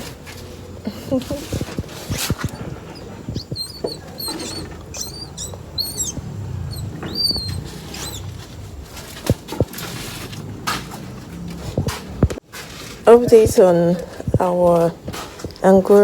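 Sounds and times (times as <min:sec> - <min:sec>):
low steady rumble: 0:00.0 - 0:12.4
small animal squeaks: 0:01.4 - 0:08.4.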